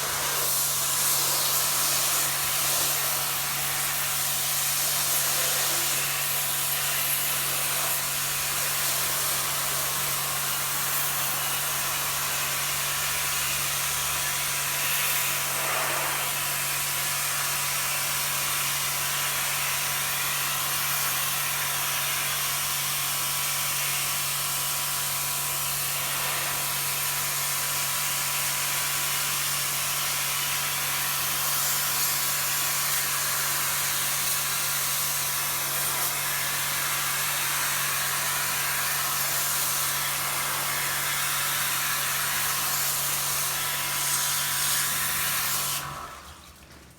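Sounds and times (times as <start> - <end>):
pressure washer motor hum: 0.0 - 46.9.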